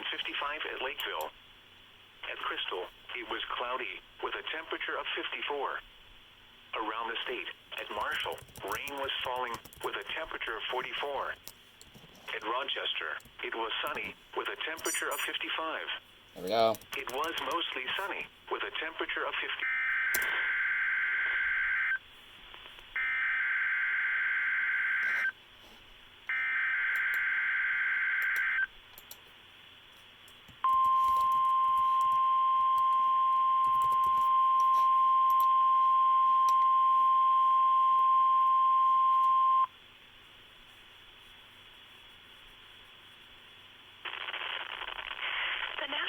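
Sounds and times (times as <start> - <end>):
steady warning alarm tone: 23.0 - 25.4, 30.6 - 39.7.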